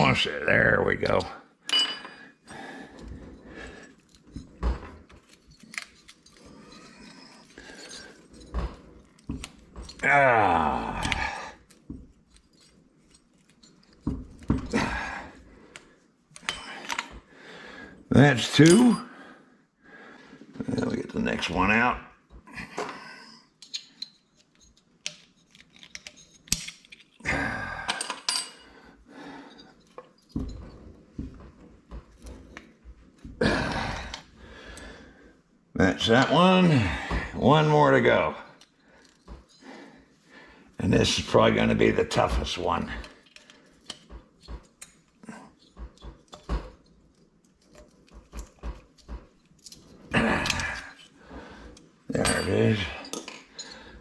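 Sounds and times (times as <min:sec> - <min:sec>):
metallic clinks of tools and parts: 0:00.9 - 0:10.0, 0:11.0 - 0:15.4, 0:16.3 - 0:17.2, 0:18.4 - 0:19.1, 0:22.2 - 0:27.2, 0:27.9 - 0:28.8, 0:29.4 - 0:31.4, 0:38.5 - 0:39.7, 0:42.2 - 0:54.0
metal clicks and clinks: 0:03.9 - 0:10.0, 0:23.6 - 0:27.2.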